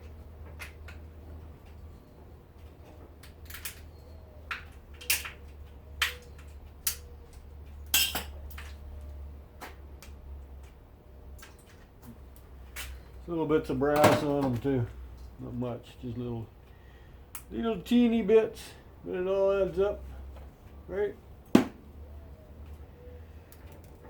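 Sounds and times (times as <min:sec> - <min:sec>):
metallic clicks of small parts: 0:03.2 - 0:03.9, 0:04.5 - 0:08.8.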